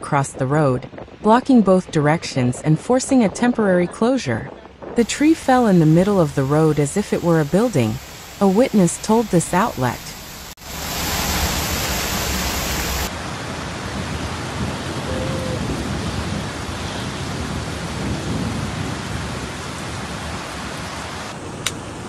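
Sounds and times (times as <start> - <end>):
heavy rain pouring: 5.0 - 21.4.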